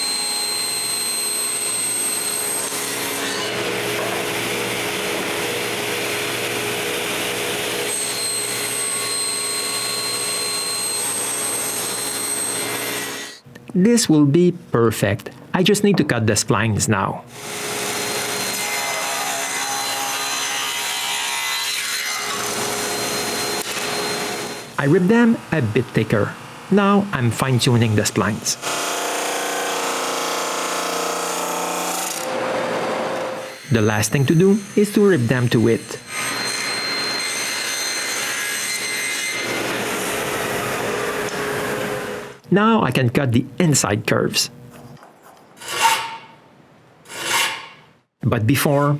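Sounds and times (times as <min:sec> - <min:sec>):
table saw cutting wood: 0:00.0 - 0:13.4, 0:17.3 - 0:26.2, 0:27.8 - 0:42.4, 0:45.6 - 0:46.4, 0:47.1 - 0:47.8.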